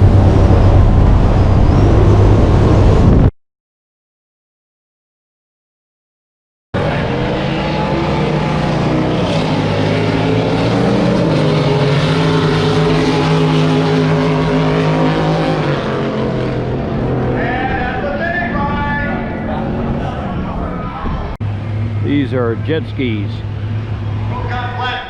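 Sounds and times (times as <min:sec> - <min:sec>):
race boat engines running: 0:06.8 - 0:25.0.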